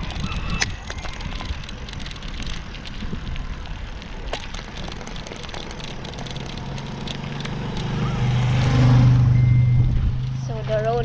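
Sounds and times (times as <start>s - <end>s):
clicks and knocks from rough road: 0.0s - 8.8s
vehicle engine hum: 0.0s - 11.0s
wind buffeting microphone: 0.0s - 11.0s.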